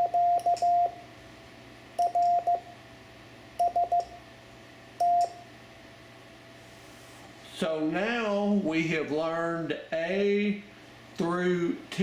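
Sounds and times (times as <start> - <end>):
morse code beeping tone: 0.0 - 1.0, 2.0 - 2.6, 3.6 - 4.1, 5.0 - 5.3.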